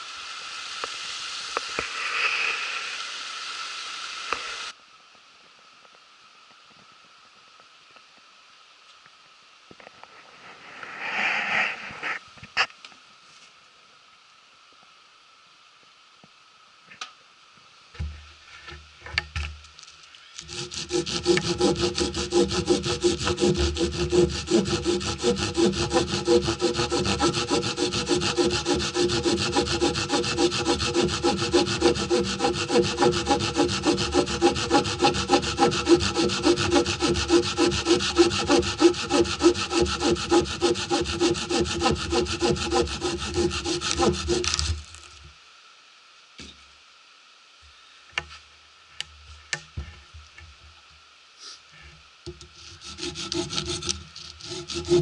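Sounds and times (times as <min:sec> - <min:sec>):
hand saw sawing wood: 0:20.4 - 0:45.0, 0:52.4 - 0:55.0.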